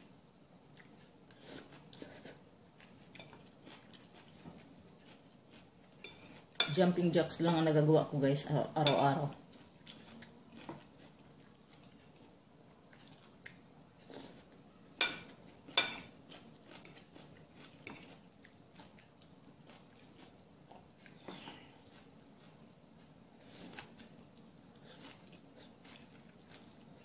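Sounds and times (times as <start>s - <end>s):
person chewing food: 0.7s - 6.6s, 9.4s - 27.0s.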